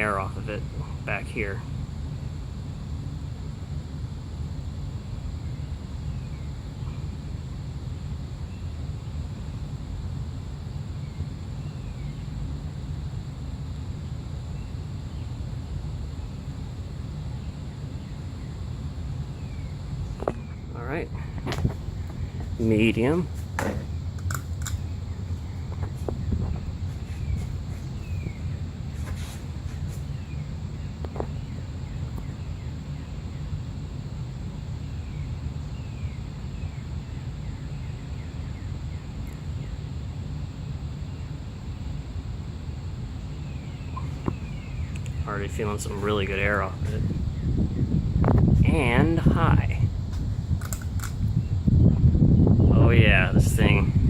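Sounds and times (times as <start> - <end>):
ceiling fan draft on microphone: 0.0 - 54.0
birds chirping faintly: 10.5 - 41.9, 43.2 - 48.0.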